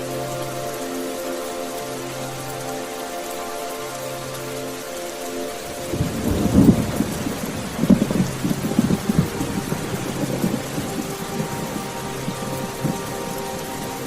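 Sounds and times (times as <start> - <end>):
steady rain falling: 0.0 - 14.0
rumble of thunder: 5.9 - 14.0.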